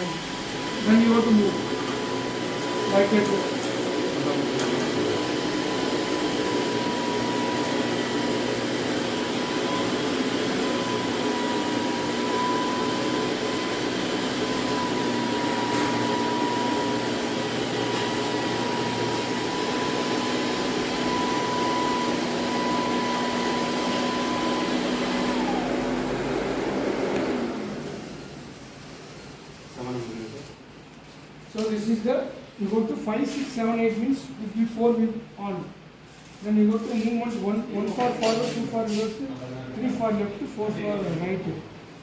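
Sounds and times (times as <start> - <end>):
robot motors whirring with whine: 0.0 - 29.2.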